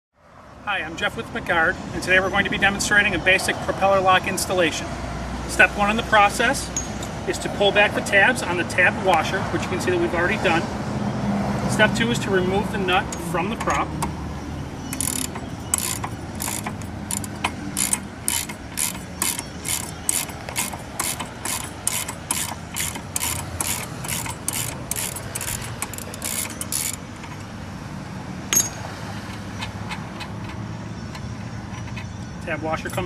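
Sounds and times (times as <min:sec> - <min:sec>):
ratchet wrench clicking: 0:13.1 - 0:14.2, 0:14.8 - 0:27.5.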